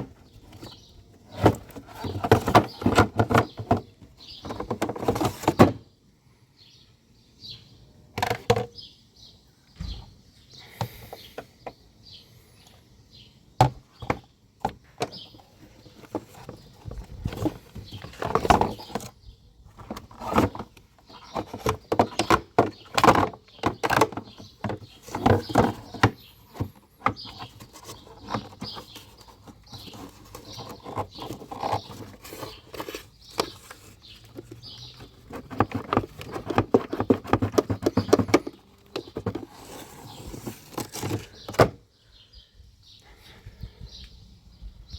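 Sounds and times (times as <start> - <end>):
hands clicking and rattling plastic parts: 19.8 - 39.5.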